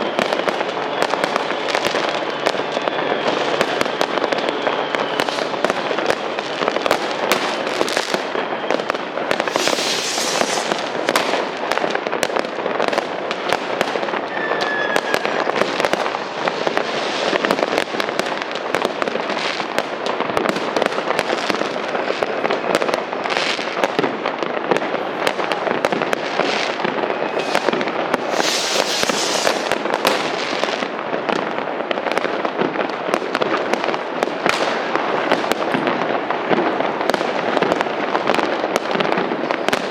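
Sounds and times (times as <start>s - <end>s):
whistling rockets: 0.0s - 24.1s, 25.2s - 31.4s
hissing crackle: 0.0s - 32.1s
fireworks and firecrackers banging: 0.0s - 39.9s.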